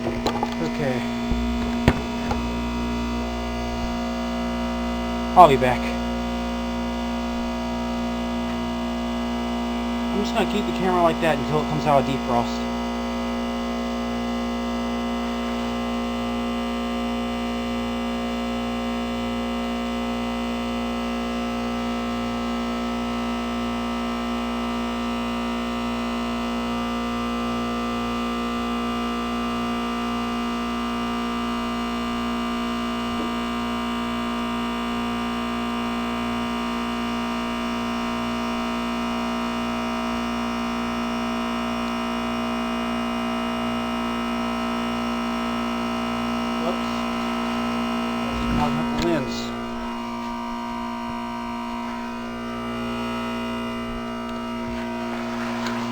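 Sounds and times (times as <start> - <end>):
heat pump humming: 0.0 - 55.9.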